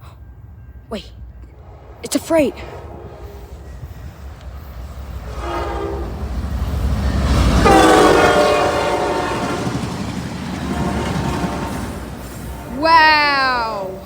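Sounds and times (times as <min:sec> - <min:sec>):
train rumbling past: 0:00.0 - 0:14.0
train horn blasts: 0:01.5 - 0:04.2, 0:05.2 - 0:06.4, 0:07.5 - 0:10.0, 0:10.6 - 0:13.4.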